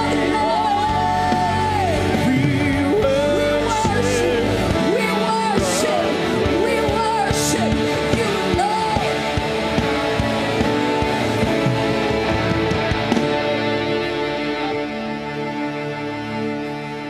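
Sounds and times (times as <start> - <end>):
person singing: 0.0 - 9.6
worship band playing: 0.0 - 17.0.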